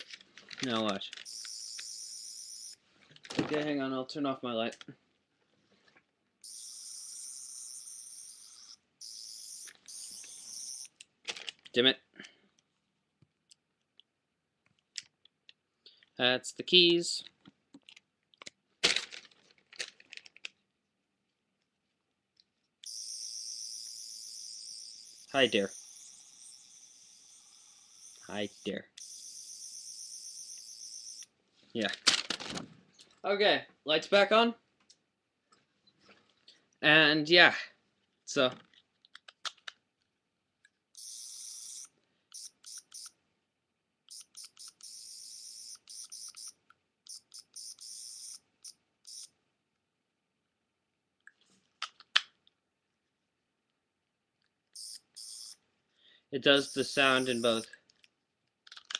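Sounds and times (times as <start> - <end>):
toy high-pitched electronic sound: 1.3 - 2.8, 6.4 - 10.9, 22.8 - 31.3, 41.0 - 43.1, 44.1 - 46.5
plastic toy clicks: 57.6 - 58.9.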